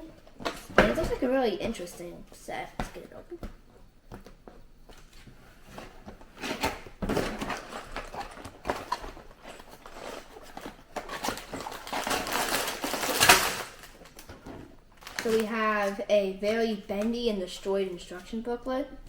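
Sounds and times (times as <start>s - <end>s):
cardboard box rustling and tearing: 7.2s - 13.6s.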